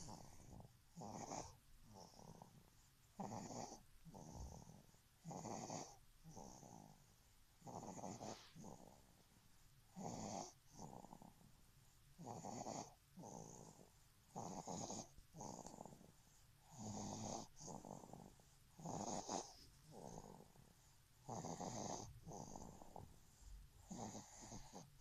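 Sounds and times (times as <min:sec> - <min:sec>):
person snoring: 0:07.6 - 0:09.0, 0:16.7 - 0:20.5, 0:21.3 - 0:23.0, 0:23.9 - 0:24.9.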